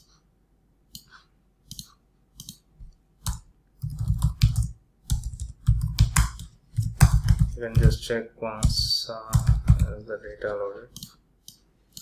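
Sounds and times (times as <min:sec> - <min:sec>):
mouse clicks: 0:00.9 - 0:03.4
keyboard typing: 0:03.2 - 0:12.0.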